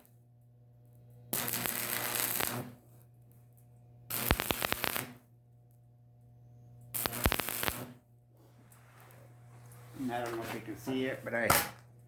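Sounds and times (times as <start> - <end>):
arc welder crackling: 0.8 - 5.8, 6.8 - 12.0
steady low hum: 5.2 - 12.0.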